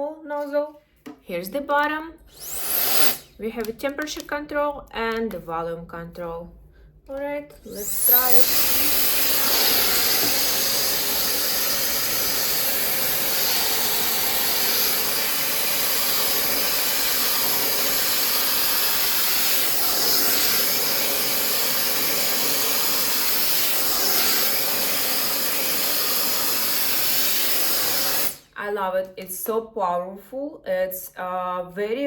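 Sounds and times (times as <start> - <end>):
hair dryer blowing: 2.3 - 3.3, 7.7 - 28.4.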